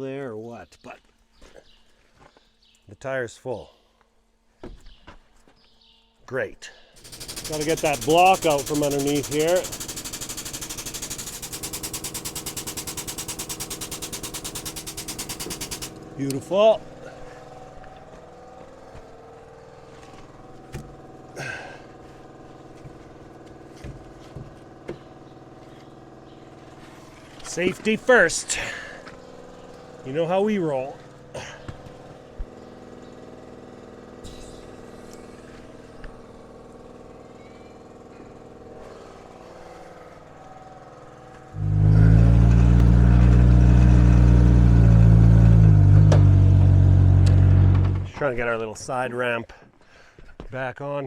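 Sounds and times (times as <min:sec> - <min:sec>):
engine idling: 0:07.0 - 0:48.1
clunks: 0:45.5 - 0:48.3.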